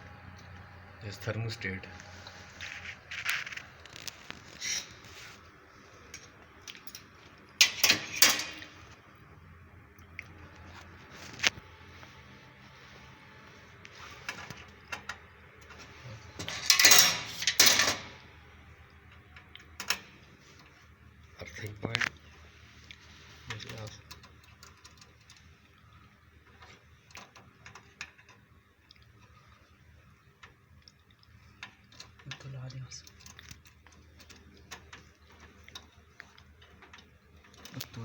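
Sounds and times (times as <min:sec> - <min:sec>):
metal parts and tools clinking: 0:06.8 - 0:08.8, 0:16.4 - 0:18.2.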